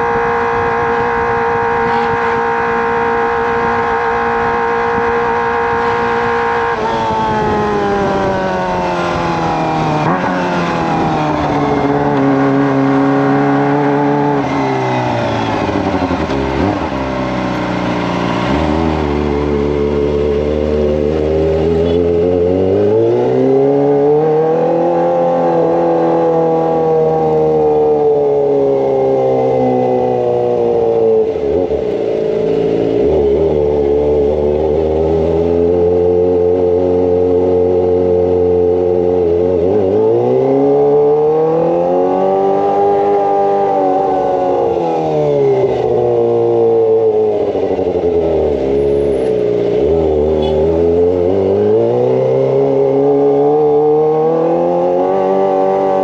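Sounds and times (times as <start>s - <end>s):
motorcycle engine accelerating: 0.0s - 56.0s.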